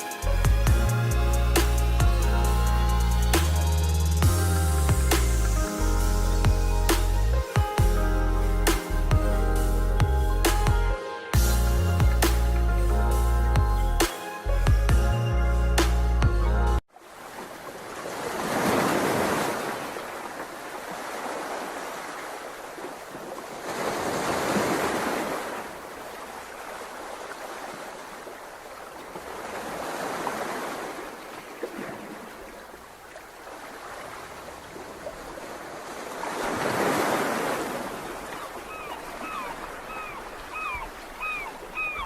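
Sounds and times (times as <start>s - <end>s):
ocean waves washing ashore: 16.9s - 42.0s.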